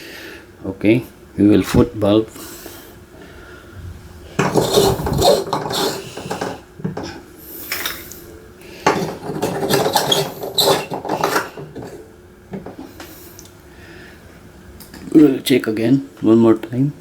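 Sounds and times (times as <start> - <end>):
glass bulbs clinking in metal sockets: 8.8 - 12.8.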